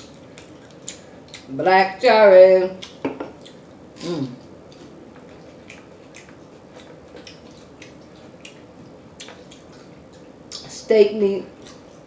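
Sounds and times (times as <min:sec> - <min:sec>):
wet chewing and lip-smacking: 0:00.0 - 0:01.5, 0:02.8 - 0:03.8, 0:04.4 - 0:10.8, 0:11.5 - 0:12.0
person humming mm: 0:04.0 - 0:04.4.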